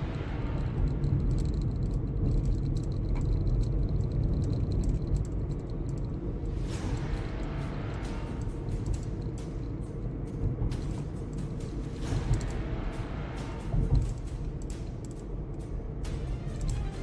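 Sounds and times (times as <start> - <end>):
car road noise rumble: 0.0 - 17.0
clicks and rattles: 0.6 - 6.3.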